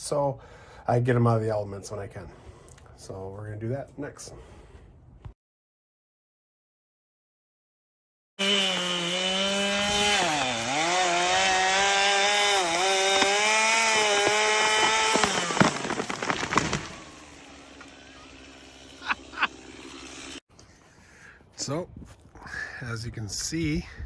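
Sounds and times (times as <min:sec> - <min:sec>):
chainsaw cutting tree: 0:08.4 - 0:20.4
wood cracking and snapping: 0:09.3 - 0:18.0.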